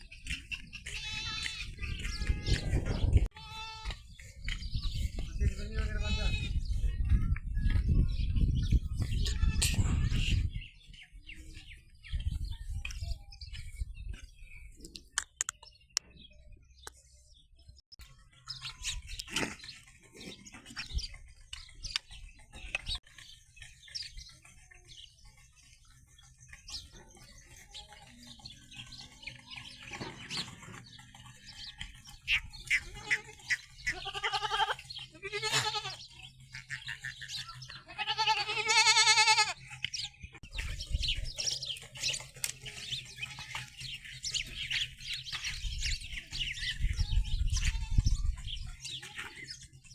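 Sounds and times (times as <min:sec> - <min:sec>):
goats bleating: 0:00.8 - 0:04.0, 0:05.8 - 0:06.6, 0:09.2 - 0:10.4, 0:32.3 - 0:39.7.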